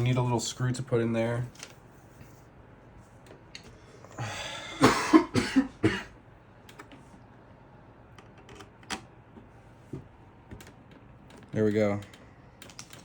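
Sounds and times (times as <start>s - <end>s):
person coughing: 4.2s - 6.2s
faint clicks of small parts: 10.6s - 13.0s.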